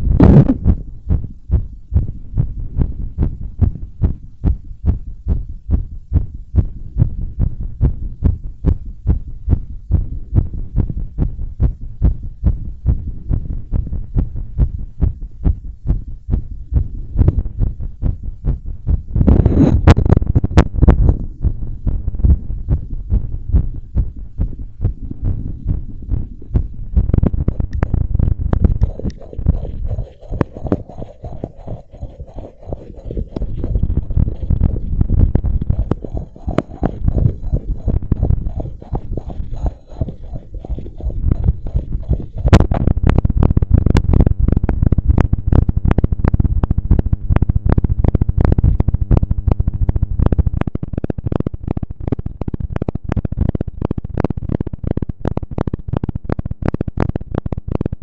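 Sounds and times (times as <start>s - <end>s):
heartbeat pounding fast: 0.0s - 51.4s
low rumbling swells: 18.9s - 43.4s.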